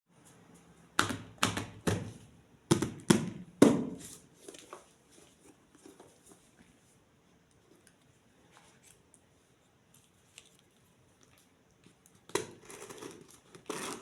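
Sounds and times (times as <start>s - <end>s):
faint handling rustles and clicks: 4.1s - 12.2s.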